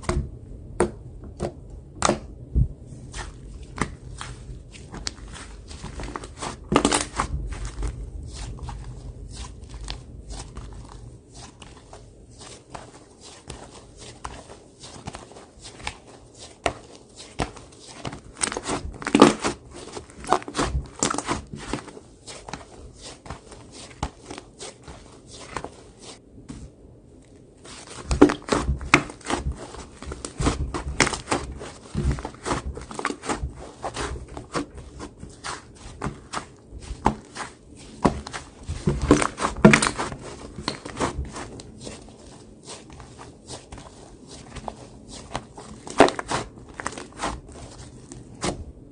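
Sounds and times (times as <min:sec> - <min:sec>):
slime crackling and popping: 0:03.2 - 0:10.9, 0:16.7 - 0:21.9, 0:27.7 - 0:48.6.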